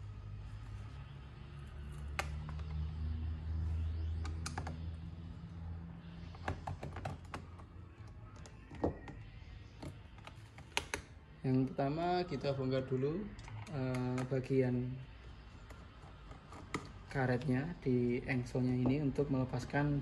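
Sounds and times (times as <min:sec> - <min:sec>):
low hum: 0:00.0 - 0:20.0
laptop clicks and taps: 0:01.9 - 0:02.9, 0:06.3 - 0:07.6, 0:09.8 - 0:11.1.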